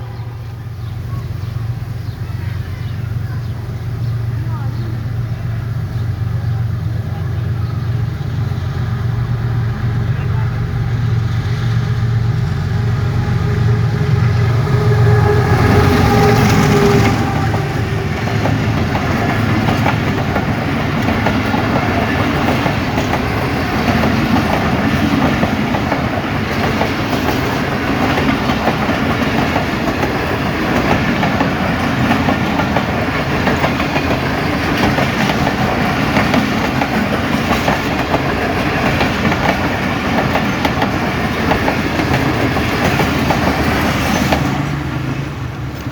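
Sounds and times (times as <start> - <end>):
locomotive engine drone: 0.0 - 45.9
train wheels clacking over rail joints: 15.6 - 45.9.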